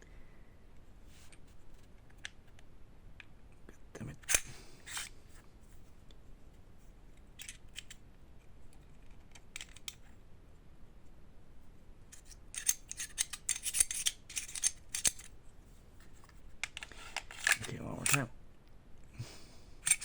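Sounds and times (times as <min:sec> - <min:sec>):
pistol parts clicking and scraping: 0:04.2 - 0:05.2, 0:07.2 - 0:08.0, 0:08.8 - 0:10.1, 0:12.1 - 0:15.4, 0:16.0 - 0:18.3.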